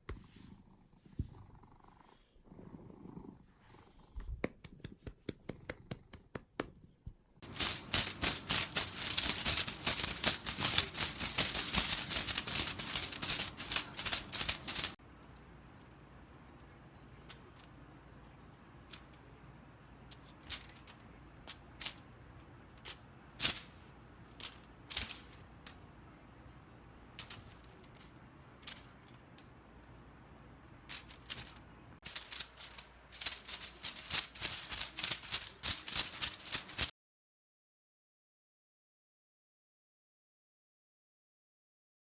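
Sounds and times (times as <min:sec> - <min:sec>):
light clicks and rattles: 0:07.4 - 0:15.0, 0:30.9 - 0:36.9.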